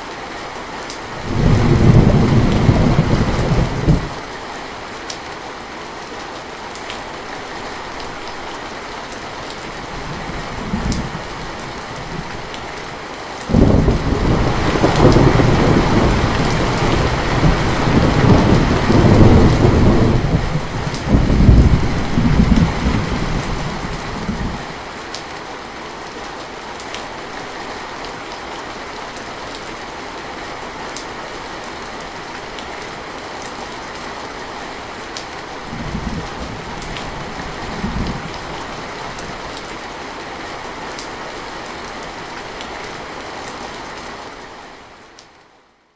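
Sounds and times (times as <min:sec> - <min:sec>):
steady rain falling: 0:00.0 - 0:45.9
rolling thunder rumble: 0:01.2 - 0:04.2, 0:13.5 - 0:24.7
rain drop ticks: 0:20.9 - 0:22.8.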